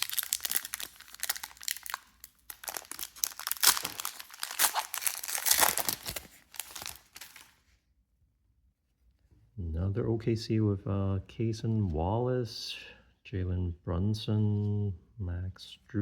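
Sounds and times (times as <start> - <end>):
foil wrapper crinkling and tearing: 0.0 - 7.6.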